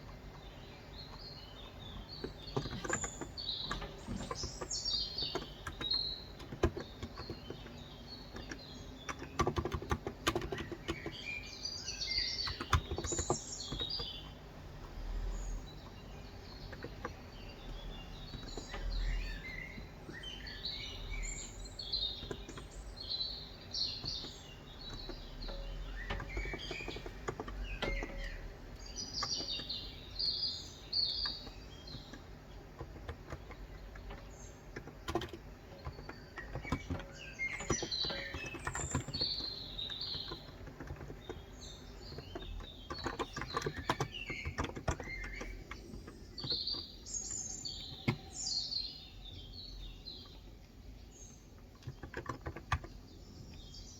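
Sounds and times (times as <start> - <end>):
small birds chirping: 0.0 - 53.9
keyboard keystrokes: 2.2 - 11.4, 12.4 - 14.2, 31.2 - 39.6.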